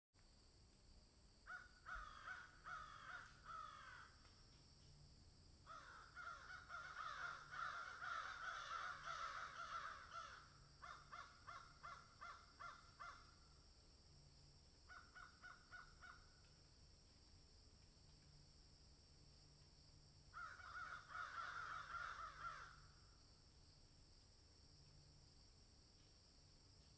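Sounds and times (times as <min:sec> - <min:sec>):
crows and magpies calling harshly: 0:01.5 - 0:04.2, 0:05.7 - 0:13.4, 0:14.9 - 0:16.3, 0:20.3 - 0:22.9.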